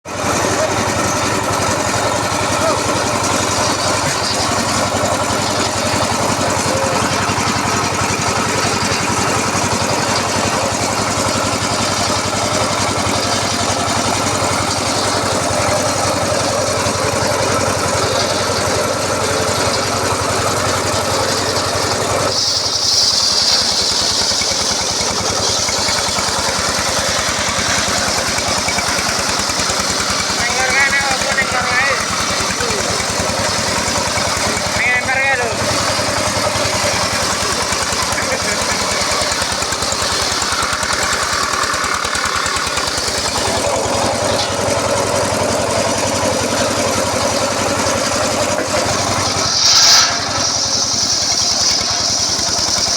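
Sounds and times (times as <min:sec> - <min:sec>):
engine-powered circular saw: 0:00.0 - 0:52.9
high hiss: 0:48.9 - 0:52.9.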